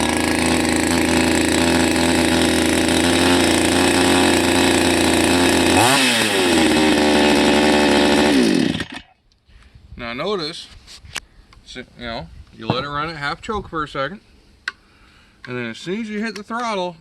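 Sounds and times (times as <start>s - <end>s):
chainsaw engine revving: 0.0s - 9.2s.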